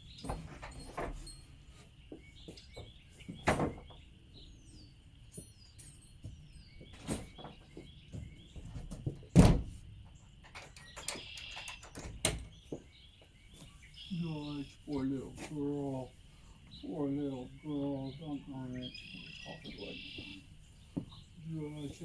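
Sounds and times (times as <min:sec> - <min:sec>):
birds chirping: 0:00.0 - 0:22.0
short falling bird calls: 0:13.5 - 0:22.0.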